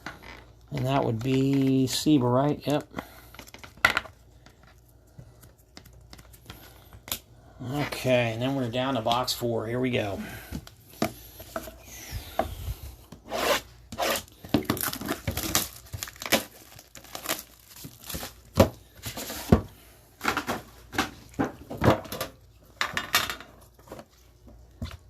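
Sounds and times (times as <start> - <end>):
plastic shrink wrap crinkling: 0.0 - 9.3, 14.1 - 19.6.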